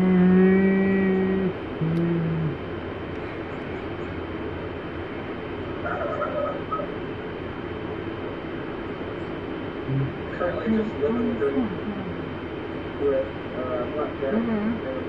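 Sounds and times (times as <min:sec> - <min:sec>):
steady low rumble: 0:00.0 - 0:15.0
animal calls: 0:05.9 - 0:06.9.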